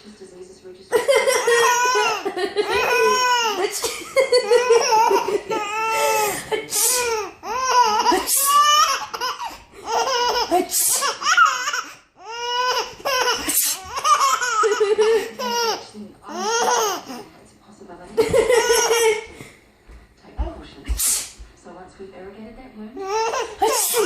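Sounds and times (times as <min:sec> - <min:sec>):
baby laughing: 0:00.9 - 0:17.2, 0:18.2 - 0:19.3, 0:23.0 - 0:24.0.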